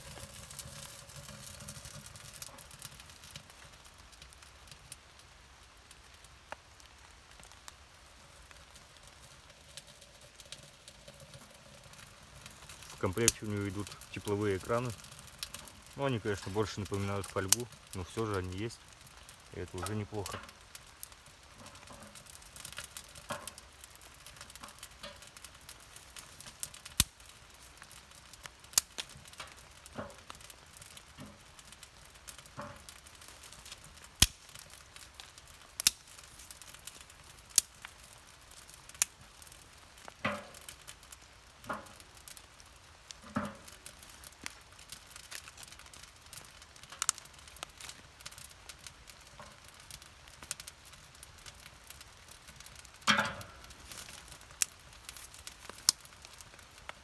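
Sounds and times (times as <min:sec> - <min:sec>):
faint hiss: 0:00.0 - 0:23.7
firewood crackling and popping: 0:00.0 - 0:57.0.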